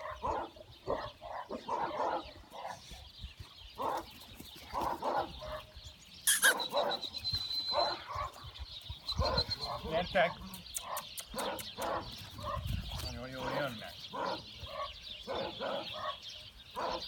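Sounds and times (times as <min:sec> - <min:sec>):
puppies yapping and whining: 0:06.3 - 0:08.4.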